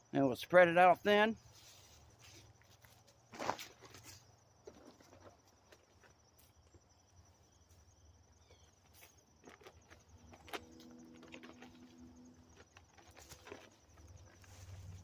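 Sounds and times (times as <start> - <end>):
insect trilling: 5.4 - 15.0.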